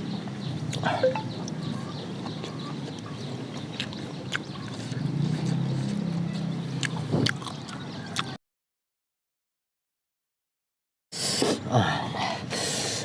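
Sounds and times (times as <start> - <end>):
chewing and wet mouth clicks: 2.4 - 6.0, 6.8 - 8.4.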